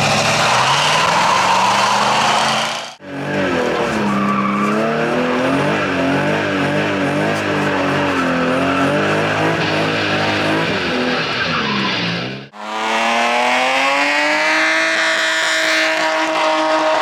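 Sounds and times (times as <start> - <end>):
tyres squealing: 0.0 - 12.5
car engine at high revs: 0.0 - 17.0
engine climbing in revs: 0.0 - 17.0.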